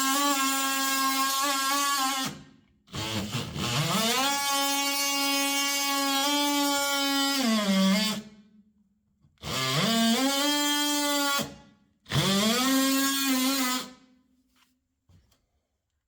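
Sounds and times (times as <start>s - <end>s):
oscillating multi-tool cutting wood: 0.0s - 2.4s, 3.0s - 8.3s, 9.4s - 14.0s.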